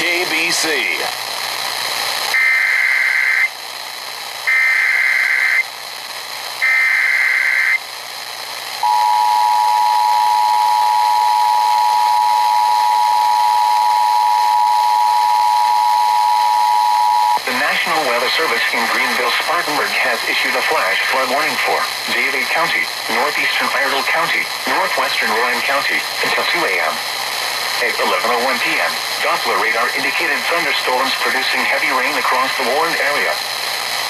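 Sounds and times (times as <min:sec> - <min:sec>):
steady two-tone alert signal: 0:08.8 - 0:17.4.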